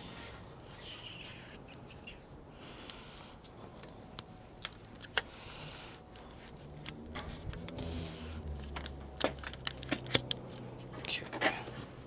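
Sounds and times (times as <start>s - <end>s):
low steady hum: 0.0s - 12.0s
tools clicking and clinking: 8.6s - 11.6s.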